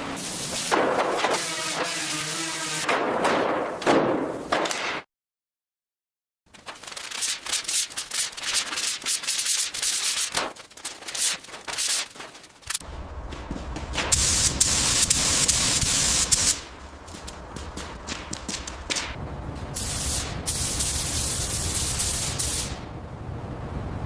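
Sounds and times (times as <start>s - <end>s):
sanding rubbing strokes: 0.2s - 2.8s, 6.8s - 12.8s.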